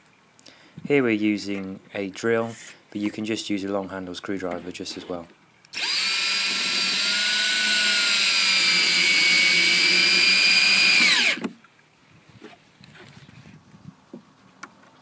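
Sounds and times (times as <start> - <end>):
electric drill whining: 5.7 - 11.6.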